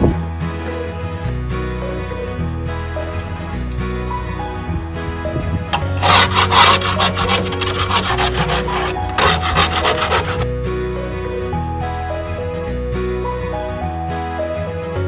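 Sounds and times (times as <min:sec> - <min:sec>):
rapid scraping strokes: 0:05.7 - 0:10.5.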